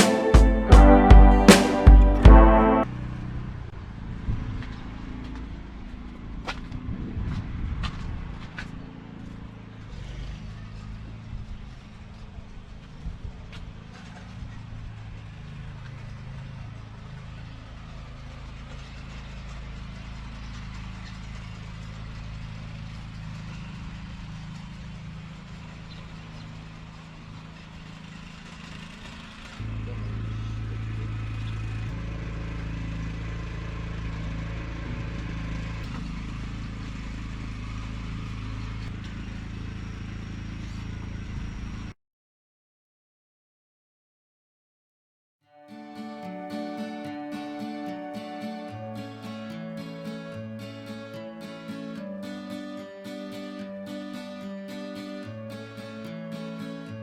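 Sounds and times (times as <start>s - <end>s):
vehicle engine droning: 0.0s - 41.9s.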